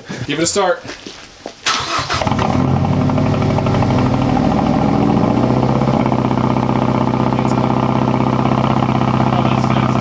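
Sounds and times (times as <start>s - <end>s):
car engine idling roughly: 5.6s - 10.0s.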